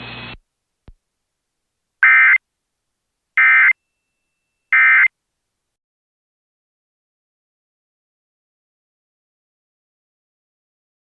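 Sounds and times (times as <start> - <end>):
digital data tone bursts: 2.0 - 2.4, 3.4 - 3.8, 4.7 - 5.1.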